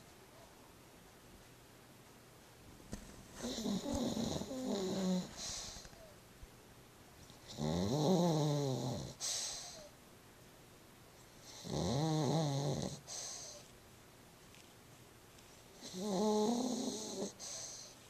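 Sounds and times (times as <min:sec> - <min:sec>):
dog snoring: 0:03.4 - 0:06.0, 0:07.4 - 0:09.9, 0:11.3 - 0:13.7, 0:15.8 - 0:18.0.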